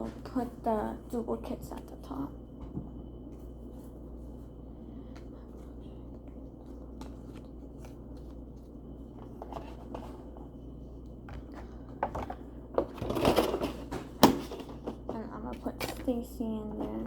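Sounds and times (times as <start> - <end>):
cards rustling and clicking: 5.1 - 10.4.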